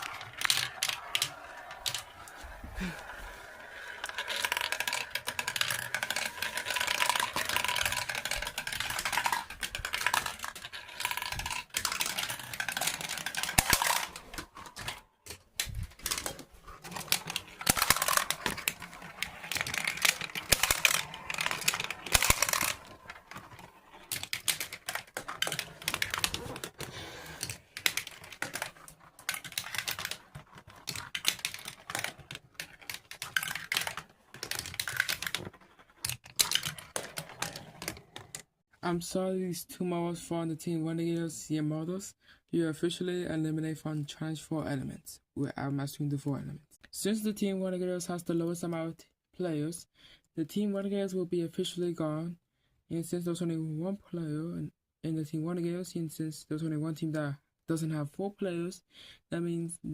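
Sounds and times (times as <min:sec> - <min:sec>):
marbles rolling and clattering: 0:00.0 - 0:15.0, 0:15.6 - 0:38.4.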